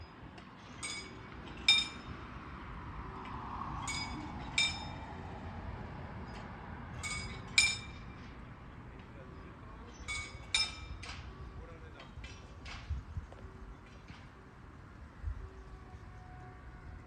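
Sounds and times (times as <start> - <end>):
sharp metallic clinks: 0.6 - 2.2, 3.8 - 5.1, 6.2 - 8.3, 9.8 - 11.2.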